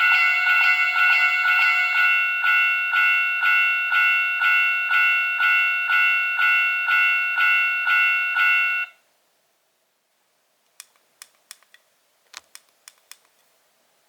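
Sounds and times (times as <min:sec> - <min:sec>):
crossing bell dinging: 0:00.0 - 0:08.9
small sharp clicks: 0:10.7 - 0:13.4.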